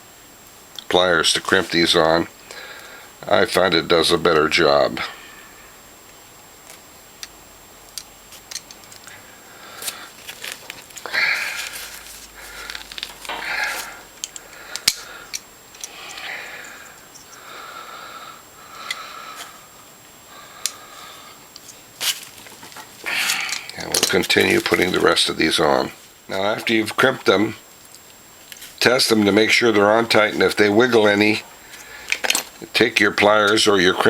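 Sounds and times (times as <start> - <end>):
wires rustling: 6.0 - 17.5, 18.4 - 34.0
pliers crimping clicks: 6.7 - 9.1, 12.7 - 16.2, 32.0 - 32.6.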